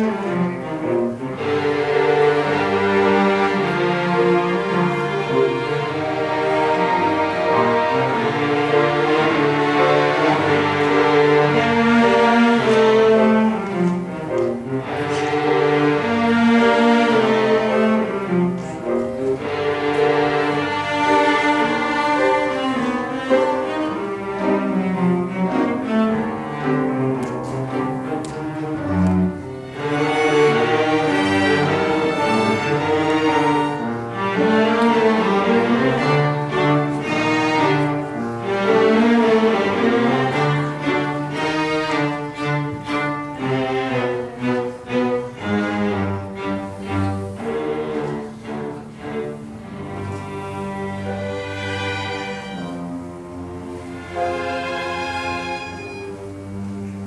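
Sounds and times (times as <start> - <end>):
bowed string ensemble: 0.0 - 57.0
cellos and double basses: 0.0 - 57.0.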